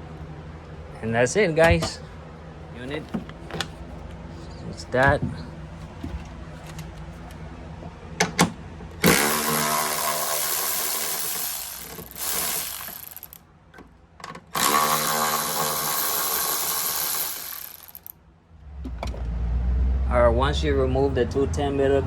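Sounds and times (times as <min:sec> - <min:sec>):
cordless power driver running: 0:09.0 - 0:13.4, 0:14.6 - 0:18.1.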